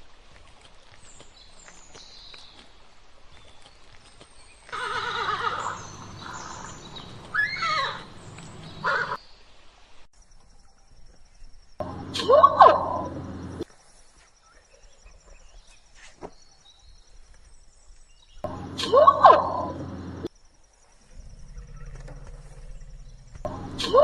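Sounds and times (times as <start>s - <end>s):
animal whinny-like call: 4.7s - 9.2s, 18.5s - 20.3s, 21.2s - 24.0s.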